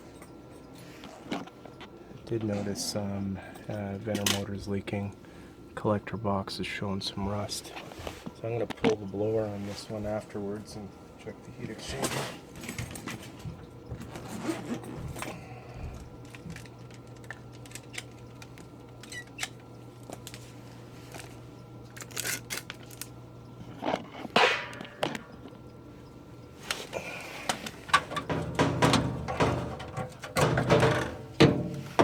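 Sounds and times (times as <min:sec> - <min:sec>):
furnace humming: 0:00.0 - 0:32.0
clicks and knocks of work: 0:26.7 - 0:32.0.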